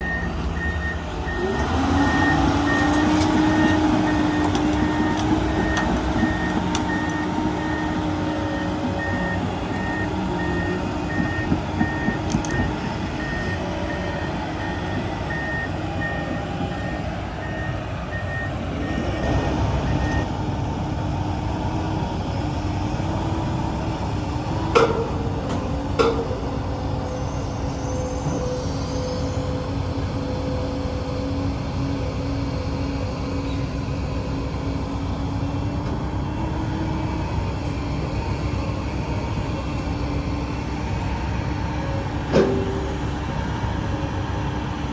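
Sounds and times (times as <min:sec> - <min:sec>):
excavator diesel engine revving: 0:00.0 - 0:44.9
sharp metallic knocks: 0:24.7 - 0:26.6.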